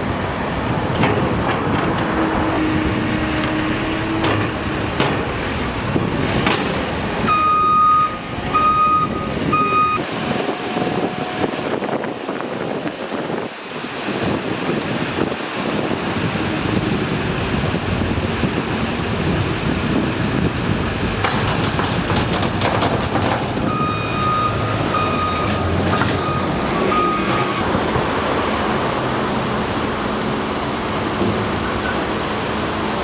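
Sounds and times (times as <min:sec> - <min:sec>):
heavy construction equipment running: 0:00.0 - 0:33.0
backup alarm beeps: 0:07.3 - 0:10.0, 0:23.7 - 0:27.6.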